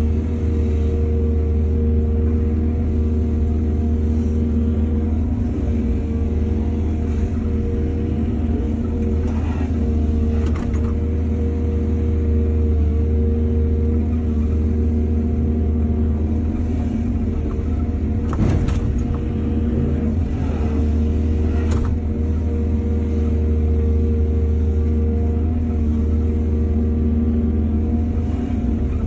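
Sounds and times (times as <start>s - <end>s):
diesel engine running: 0.0s - 29.0s.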